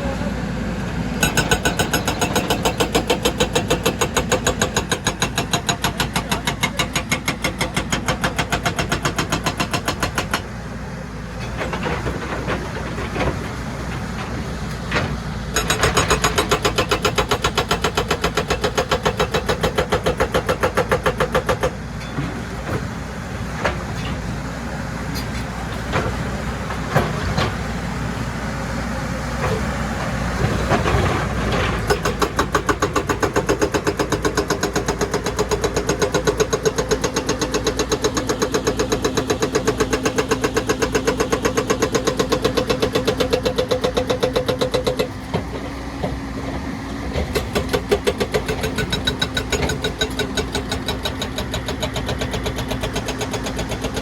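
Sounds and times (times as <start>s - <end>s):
excavator engine running: 0.0s - 54.0s
hydraulic breaker hammering rock: 1.2s - 10.6s, 14.9s - 21.8s, 30.4s - 54.0s.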